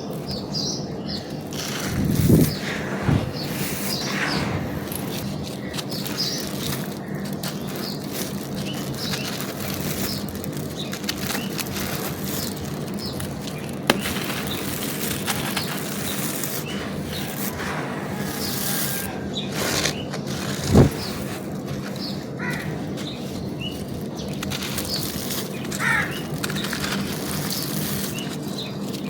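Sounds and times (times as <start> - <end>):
brittle material crunching: 6.5 - 16.4, 23.8 - 28.6.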